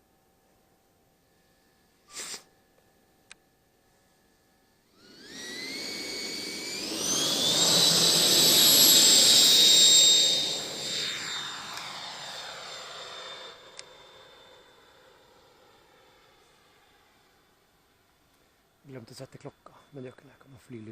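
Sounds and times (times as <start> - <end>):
electric ducted fan whining: 4.8 - 16.6.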